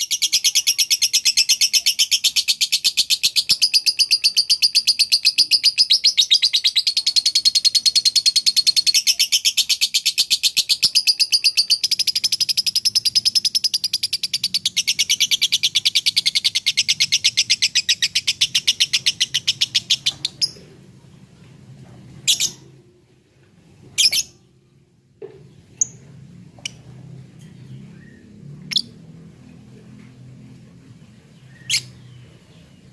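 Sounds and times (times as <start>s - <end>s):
lovebird chattering trill: 0.0s - 14.2s.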